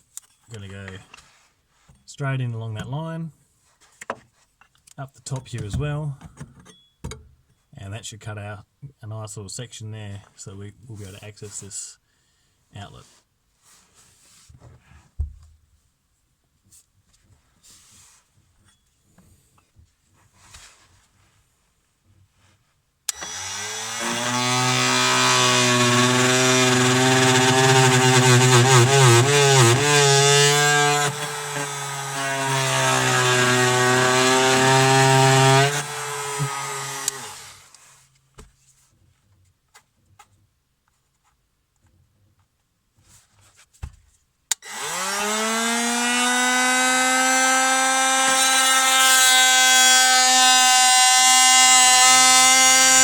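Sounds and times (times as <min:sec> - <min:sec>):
oscillating multi-tool sawing wood: 0:23.1 - 0:37.8, 0:44.5 - 0:53.0.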